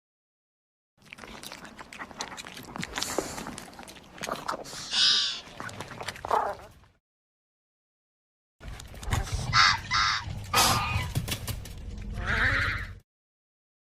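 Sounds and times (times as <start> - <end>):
creature clicks and rasping growls: 1.0 - 7.0, 8.6 - 13.0.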